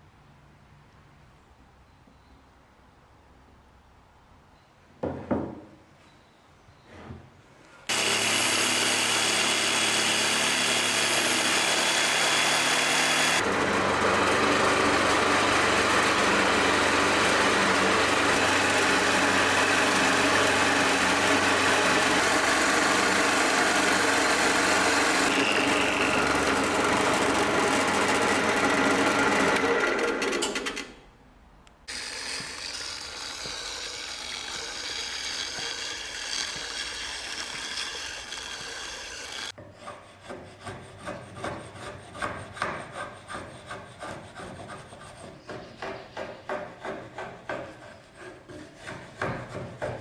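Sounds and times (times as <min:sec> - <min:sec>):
power tool whining: 0:07.9 - 0:30.9, 0:31.9 - 0:39.6.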